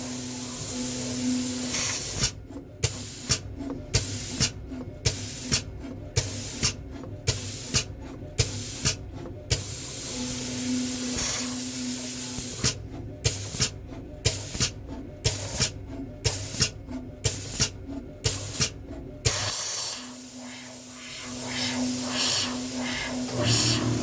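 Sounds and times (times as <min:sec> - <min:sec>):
spray nozzle hissing: 0:20.5 - 0:24.0.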